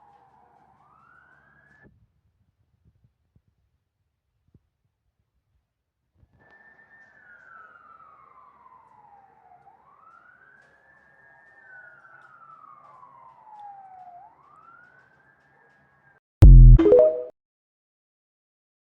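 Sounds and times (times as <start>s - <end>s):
faint fire engine siren wail: 7.3s - 15.6s.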